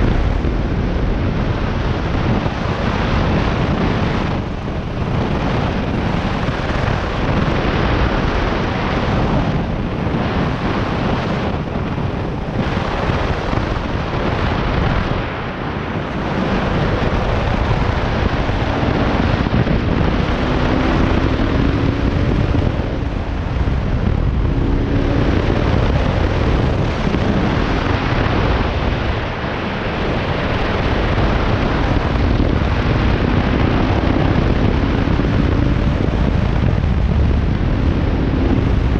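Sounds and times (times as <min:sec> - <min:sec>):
wind buffeting microphone: 0:00.0 - 0:38.9
motorcycle engine running: 0:15.6 - 0:38.9.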